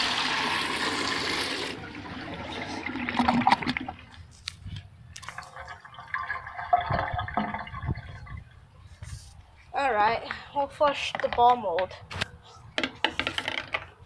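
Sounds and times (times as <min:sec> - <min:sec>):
toilet flushing: 0:00.0 - 0:04.2
water trickling: 0:05.1 - 0:08.6.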